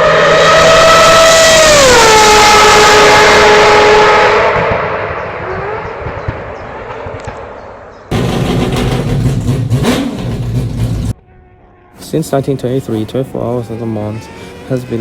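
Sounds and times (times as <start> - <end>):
high-revving racing car engine: 0.0 - 3.6, 8.1 - 11.1
loud low rough engine: 8.1 - 11.2.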